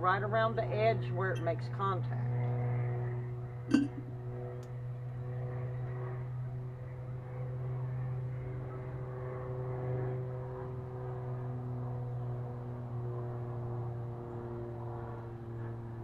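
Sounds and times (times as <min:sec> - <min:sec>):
low mechanical hum: 0:00.0 - 0:16.0
steady tones: 0:03.7 - 0:04.2.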